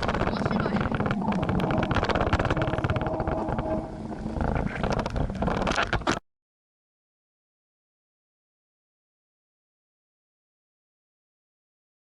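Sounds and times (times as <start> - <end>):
wind buffeting microphone: 0.0 - 6.2.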